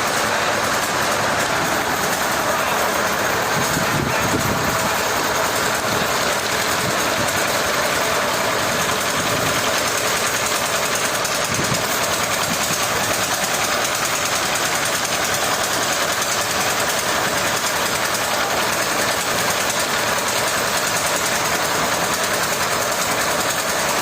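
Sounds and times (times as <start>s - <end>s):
machinery running steadily: 0.0s - 24.0s.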